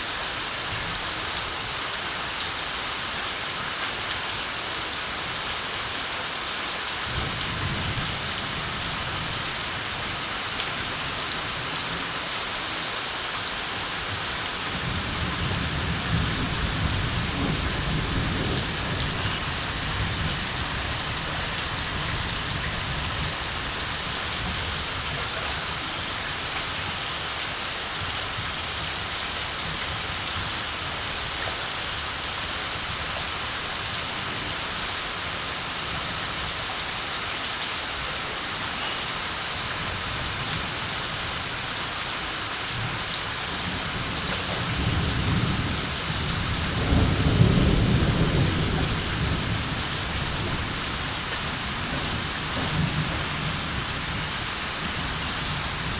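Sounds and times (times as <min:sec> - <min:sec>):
heavy rain falling: 0:00.0 - 0:55.9
distant thunder rumbling: 0:14.9 - 0:23.4.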